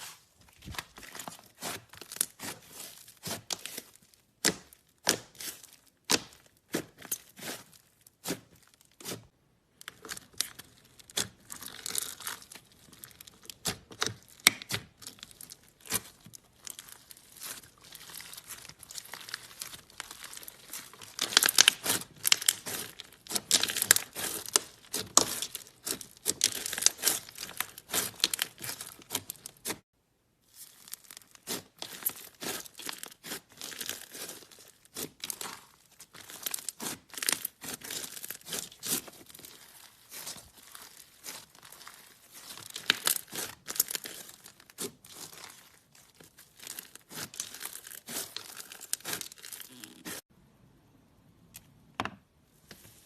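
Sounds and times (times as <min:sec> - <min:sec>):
slime crackling and popping: 0:09.8 - 0:29.8, 0:30.5 - 0:50.2.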